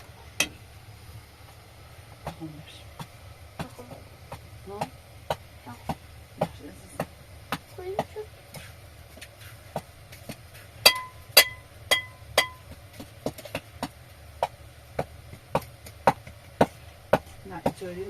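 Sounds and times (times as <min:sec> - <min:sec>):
sharp blows ringing metallic: 0:10.8 - 0:12.7.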